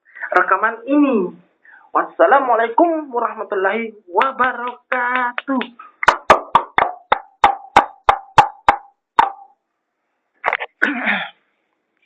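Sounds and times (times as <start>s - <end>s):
hollow mouth pops: 6.0s - 9.5s.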